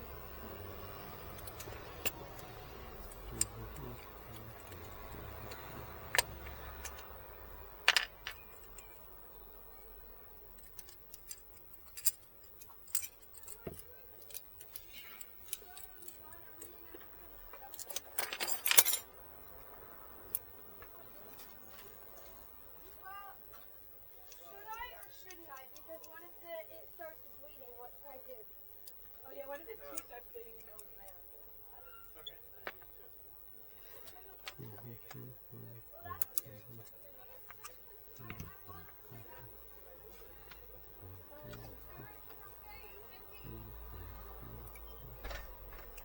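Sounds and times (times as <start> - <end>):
keys jangling: 0.5 - 9.0, 10.6 - 19.6.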